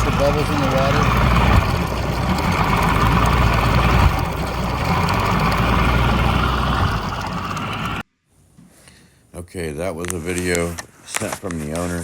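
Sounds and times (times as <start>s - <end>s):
outboard motor running: 0.0s - 8.0s.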